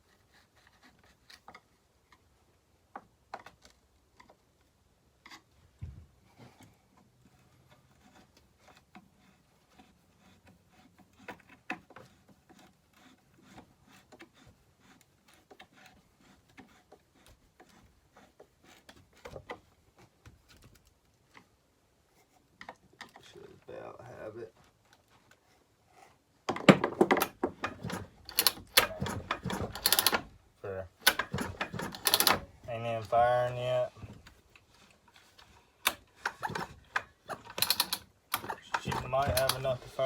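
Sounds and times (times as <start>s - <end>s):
small metal parts clicking: 27.2s - 30.3s, 31.0s - 32.5s, 35.8s - 39.7s.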